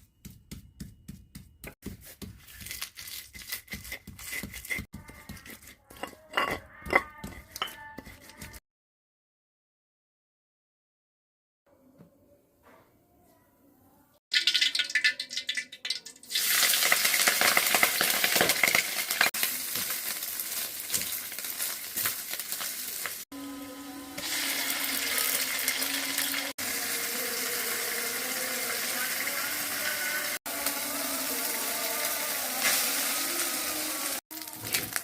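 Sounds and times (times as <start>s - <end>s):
cooking hiss: 24.2s - 35.0s.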